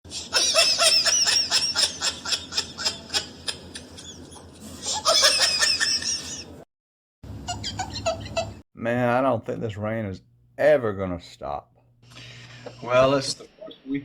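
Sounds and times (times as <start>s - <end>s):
high-pitched laughter: 0.1s - 6.6s, 7.3s - 8.6s.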